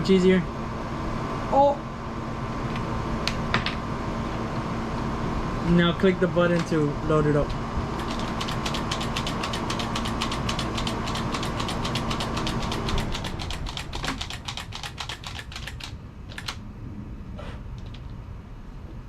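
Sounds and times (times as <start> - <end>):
small motor humming: 8.0 - 14.4
fast rattle of clicks: 8.0 - 16.6.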